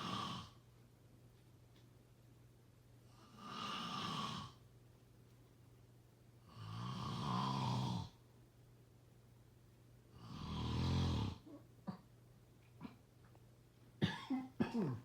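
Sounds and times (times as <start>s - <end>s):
person snoring: 0.0s - 0.6s, 3.3s - 4.6s, 6.5s - 8.2s, 10.2s - 11.4s.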